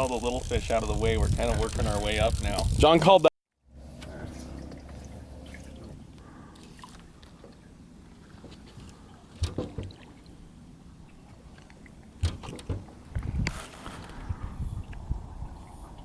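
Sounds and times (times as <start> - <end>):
knocks and thumps in a boat: 8.3 - 10.3, 11.6 - 13.6.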